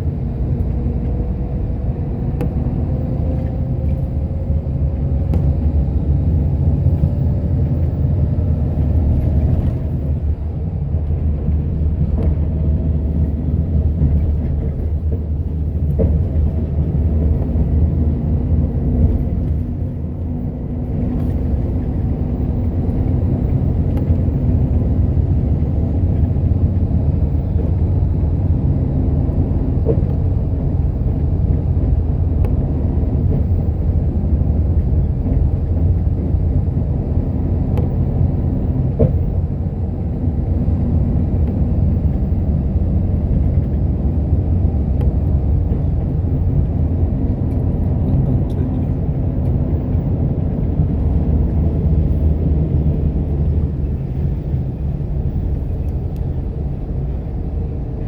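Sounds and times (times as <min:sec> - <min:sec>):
bus engine and tyre rumble: 0:00.0 - 0:58.0.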